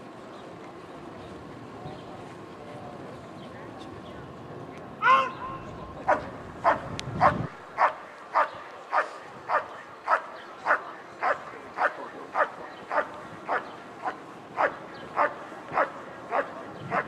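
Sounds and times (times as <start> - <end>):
dog barking: 6.1 - 13.6, 14.6 - 17.0.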